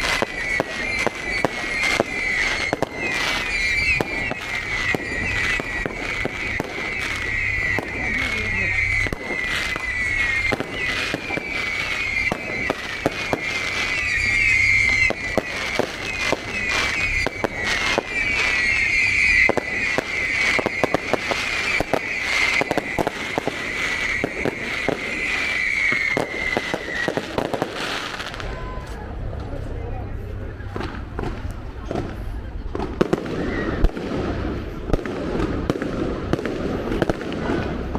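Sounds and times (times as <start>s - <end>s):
high falling whistle: 0.0s - 29.0s
fireworks bangs and crackles: 0.0s - 37.9s.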